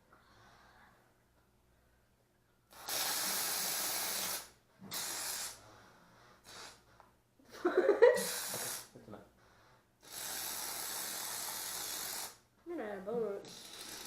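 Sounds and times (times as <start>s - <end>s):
aerosol can spraying: 2.8s - 5.6s, 8.1s - 8.9s.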